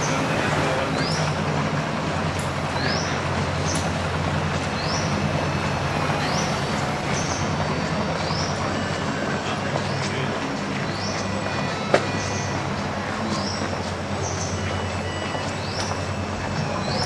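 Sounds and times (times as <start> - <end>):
train rumbling: 0.0 - 17.0
high-pitched rising chirps: 4.6 - 9.4.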